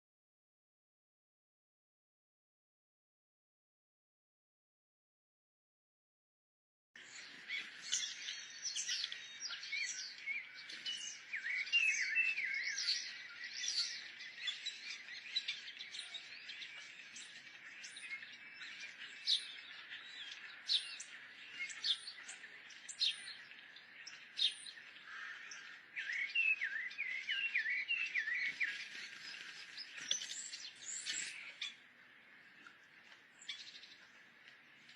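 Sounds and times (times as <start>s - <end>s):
small birds chirping: 7.0s - 34.9s.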